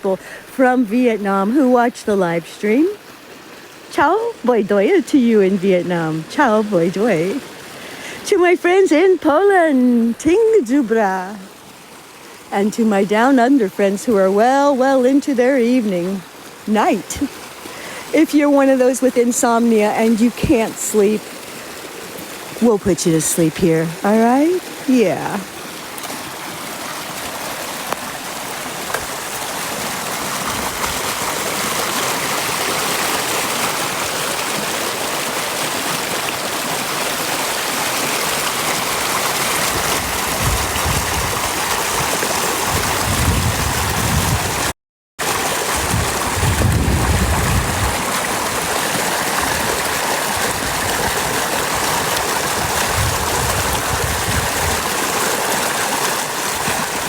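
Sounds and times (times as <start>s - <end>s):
flowing water rushing: 0.0s - 57.0s
low rumbling thumps: 45.8s - 48.1s.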